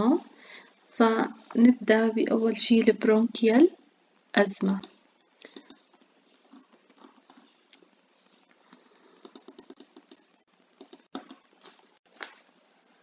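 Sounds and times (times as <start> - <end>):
small clicks and taps: 4.7 - 7.9, 8.7 - 12.4.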